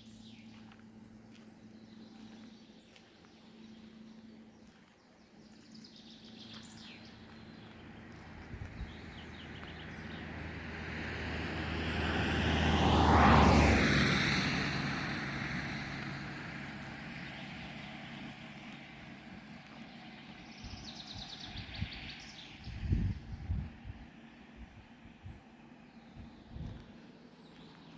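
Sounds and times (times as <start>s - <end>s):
vehicle driving past: 6.2s - 22.5s.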